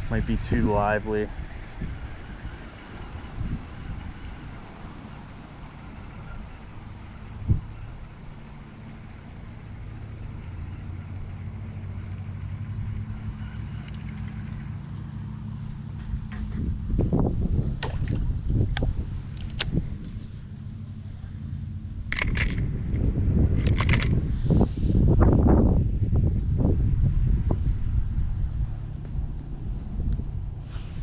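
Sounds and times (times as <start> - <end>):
insects chirping: 0.0 - 31.0
low motor hum: 0.0 - 31.0
rustles: 30.6 - 31.0.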